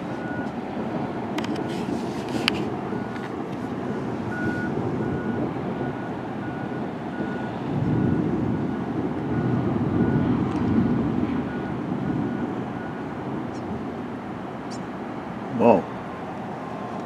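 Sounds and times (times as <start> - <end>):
reversing alarm beeping: 0.2 - 0.6, 2.9 - 3.2, 3.9 - 10.4, 11.4 - 13.6.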